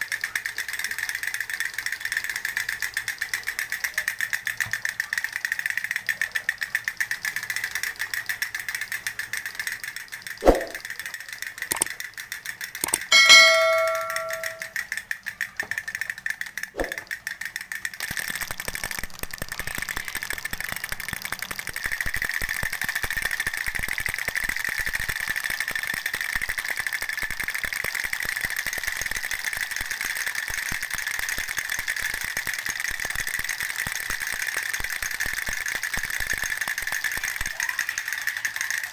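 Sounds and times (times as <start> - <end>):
fast mechanical rattling: 0.0 - 13.2, 14.6 - 38.9
bell ding: 12.8 - 14.7.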